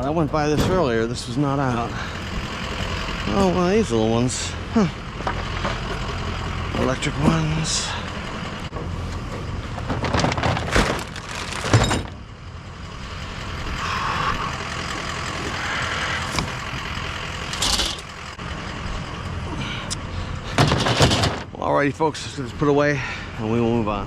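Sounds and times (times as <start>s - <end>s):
vehicle noise: 0.0s - 24.0s
scrap items clattering: 9.7s - 12.2s, 17.5s - 18.1s, 20.5s - 21.5s.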